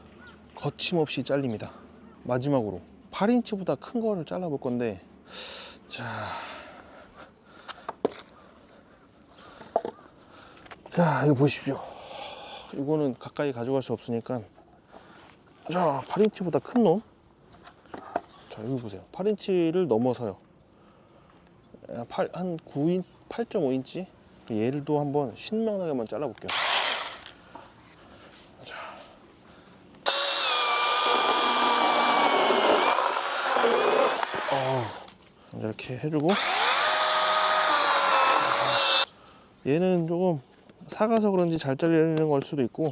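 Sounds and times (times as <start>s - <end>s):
person breathing out: 11.8s - 12.7s
mini chainsaw whining: 26.5s - 27.4s, 30.1s - 35.1s, 36.3s - 39.1s.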